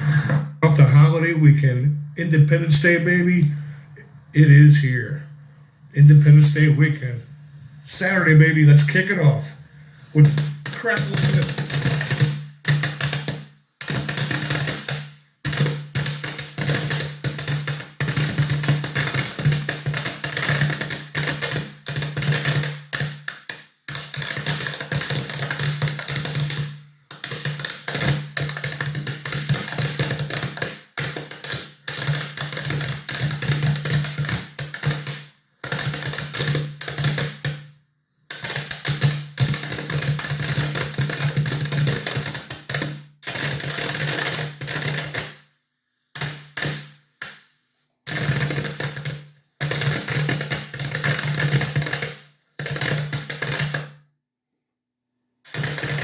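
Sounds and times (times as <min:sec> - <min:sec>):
firework string crackling: 0:05.9 - 0:12.2.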